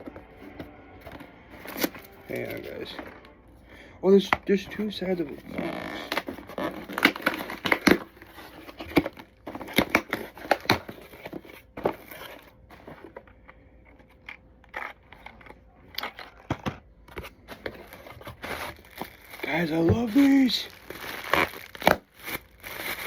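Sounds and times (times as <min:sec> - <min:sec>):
cardboard packaging crinkling: 0:00.0 - 0:23.0.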